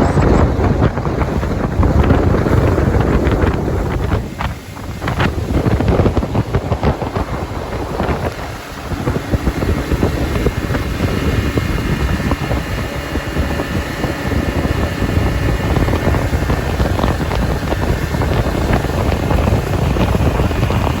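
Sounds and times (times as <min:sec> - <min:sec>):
wind buffeting microphone: 0:00.0 - 0:21.0.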